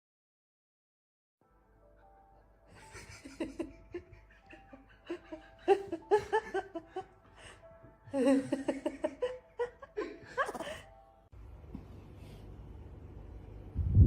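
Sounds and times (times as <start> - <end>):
faint steady music: 1.4 - 13.8
people laughing and giggling: 2.7 - 10.9.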